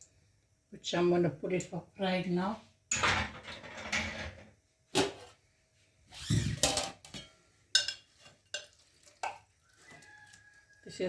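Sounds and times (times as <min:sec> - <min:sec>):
cookware rustling clatter: 0:02.9 - 0:05.3.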